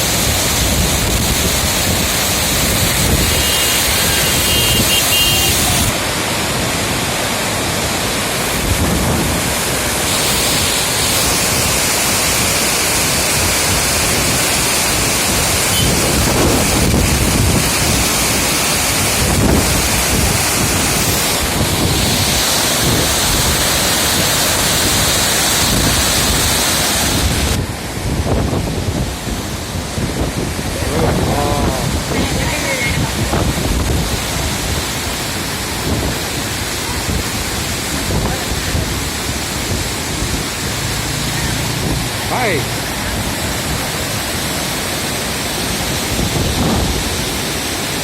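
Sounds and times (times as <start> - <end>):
water rushing: 0.0 - 48.0
wind buffeting microphone: 13.4 - 24.4, 27.1 - 40.8, 45.9 - 47.6.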